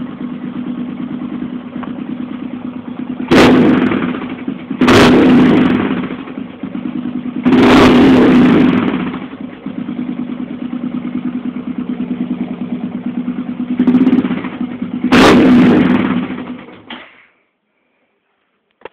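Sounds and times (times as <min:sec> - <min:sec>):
engine throttle blips: 0:00.0 - 0:16.9
motorcycle engine idling: 0:00.0 - 0:17.0.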